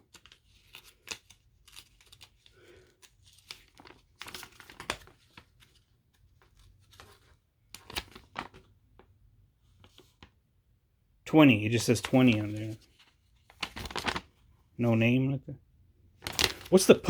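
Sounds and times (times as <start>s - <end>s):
paper and cardboard rustling: 0.0s - 8.8s, 11.8s - 14.5s, 16.2s - 17.0s.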